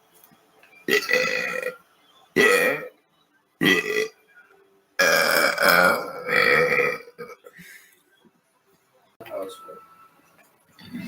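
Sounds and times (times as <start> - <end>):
person burping: 0.9 - 1.8, 2.4 - 2.9, 3.6 - 4.1, 5.0 - 7.5.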